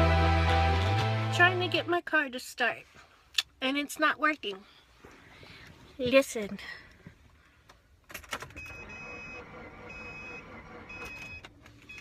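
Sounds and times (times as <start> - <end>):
car engine cranking: 8.1 - 12.0.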